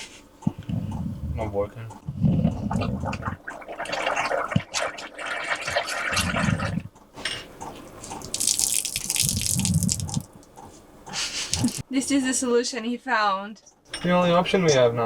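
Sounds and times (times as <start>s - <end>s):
deep bubbling bursts: 0.5s - 7.0s, 8.2s - 10.4s, 11.5s - 11.8s
water gurgling in a sink: 2.2s - 6.9s, 8.2s - 10.4s, 11.4s - 11.8s.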